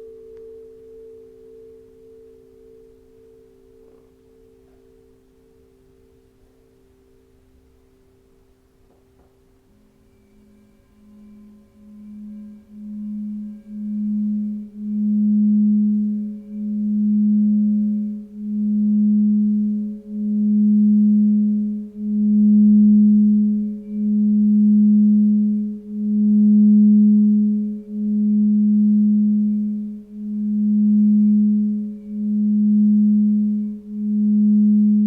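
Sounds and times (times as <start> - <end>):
faint higher tone: 0.0 - 35.0
singing bowl low tone: 0.0 - 35.0.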